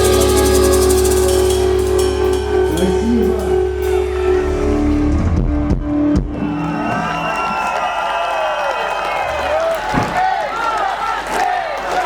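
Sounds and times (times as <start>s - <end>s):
fast cymbal strikes: 0.0s - 4.1s
rock band playing: 0.0s - 7.5s.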